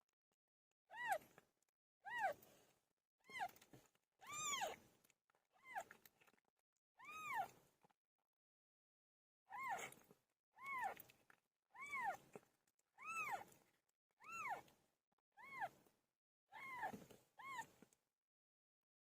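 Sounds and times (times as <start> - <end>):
cat meowing: 4.2 - 4.8, 7.0 - 7.5, 10.6 - 11.0, 11.8 - 12.2, 13.0 - 13.5, 16.5 - 17.7.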